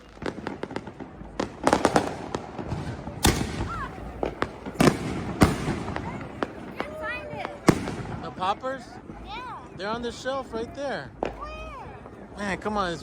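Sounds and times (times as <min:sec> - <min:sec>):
loud firework bangs: 0:00.0 - 0:08.6
firecrackers popping: 0:00.0 - 0:09.3.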